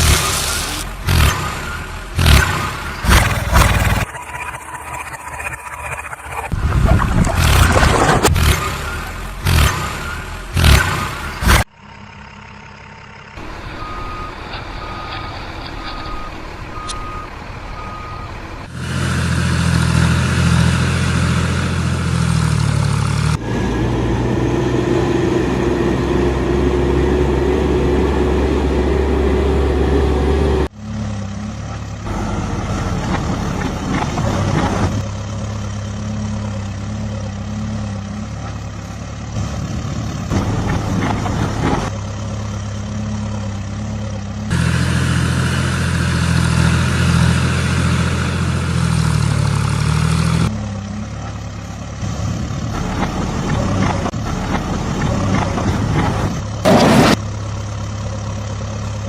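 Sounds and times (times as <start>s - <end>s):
diesel engines running: 0.0s - 59.0s
reversing alarm beeps: 13.7s - 18.4s.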